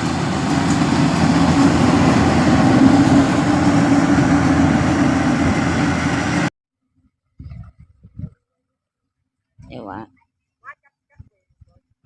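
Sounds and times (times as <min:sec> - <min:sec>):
harvester engine droning: 0:00.0 - 0:06.5.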